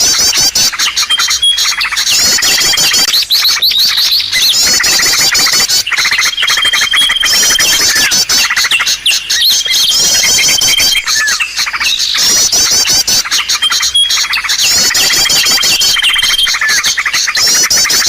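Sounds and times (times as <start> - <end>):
fast rattling bird trills: 0.0 - 18.0
high whistle of songbirds: 0.0 - 18.0
quick bird chirping: 0.8 - 18.0.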